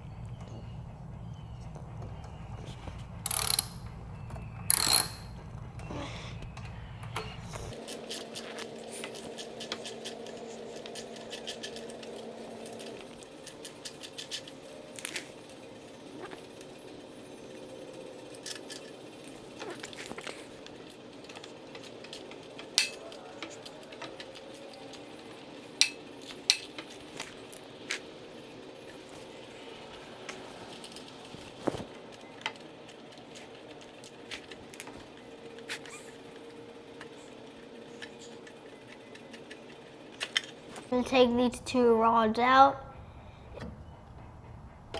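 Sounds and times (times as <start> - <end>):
metallic clinks of tools: 3.3 - 3.8, 4.7 - 5.3, 18.4 - 28.1
ratchet wrench clicking: 3.3 - 3.8, 4.7 - 5.3, 7.7 - 15.2, 18.4 - 28.1.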